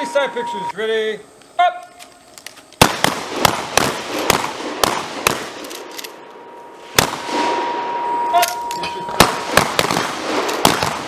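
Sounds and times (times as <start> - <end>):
shotgun shots with echo: 2.8 - 5.6, 6.9 - 7.7, 9.0 - 11.0.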